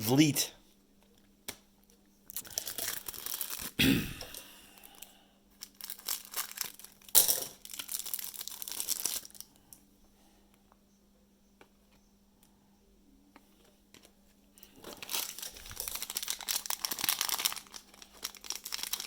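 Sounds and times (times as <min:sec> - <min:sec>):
faint steady hum: 0:00.0 - 0:19.0
foil wrapper crinkling and tearing: 0:02.3 - 0:03.8, 0:04.8 - 0:09.5, 0:14.6 - 0:19.0.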